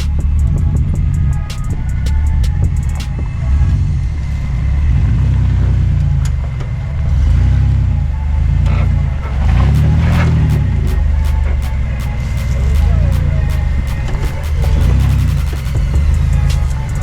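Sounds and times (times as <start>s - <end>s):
music with steady beat: 0.0s - 4.2s, 9.6s - 17.0s.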